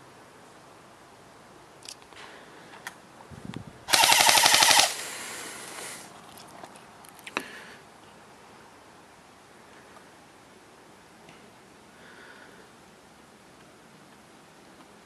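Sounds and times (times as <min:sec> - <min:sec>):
airsoft rifle full-auto burst: 0:03.9 - 0:05.3.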